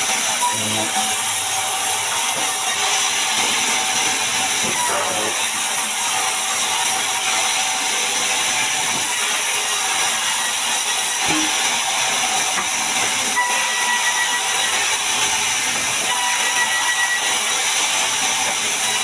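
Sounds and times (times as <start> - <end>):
bandsaw cutting through log: 0.0 - 19.0.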